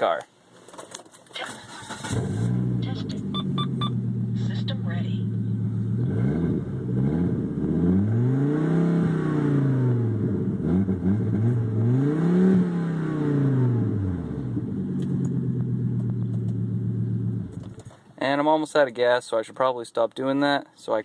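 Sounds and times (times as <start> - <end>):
car engine revving and idling: 1.6 - 17.8.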